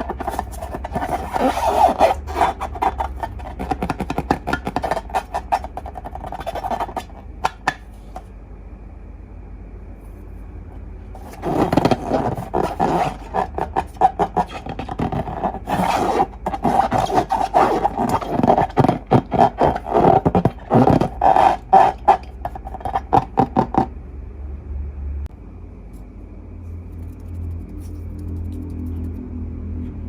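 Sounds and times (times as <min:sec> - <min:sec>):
slime and balloons squeaking: 0:00.0 - 0:07.3, 0:11.2 - 0:23.9.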